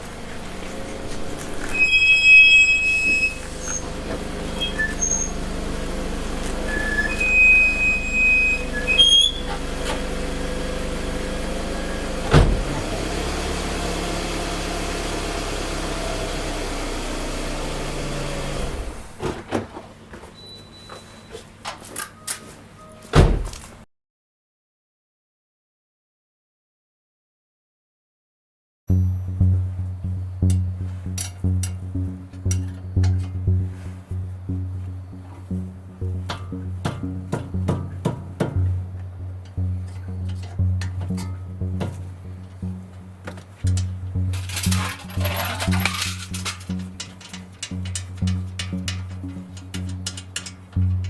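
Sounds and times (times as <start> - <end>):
brakes squealing: 0.0 - 19.4, 28.9 - 51.0
vehicle running noise: 0.0 - 20.3, 28.9 - 51.0
knocks and clicks: 30.4 - 51.0.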